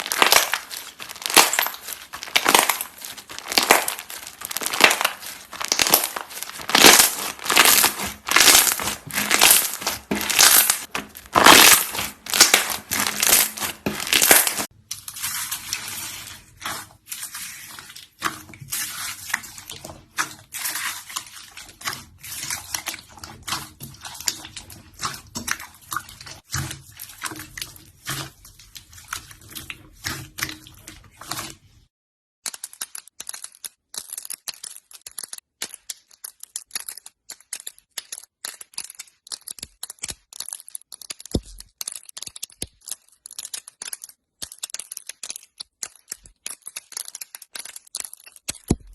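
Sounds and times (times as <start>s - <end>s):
slime crackling and popping: 0.0s - 14.8s, 33.4s - 48.9s.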